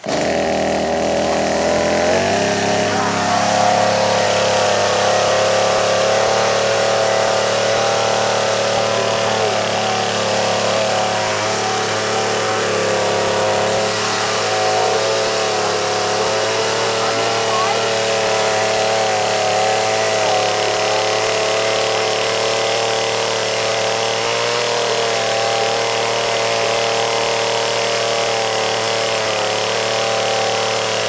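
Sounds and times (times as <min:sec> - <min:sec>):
chainsaw running: 0:00.0 - 0:31.0.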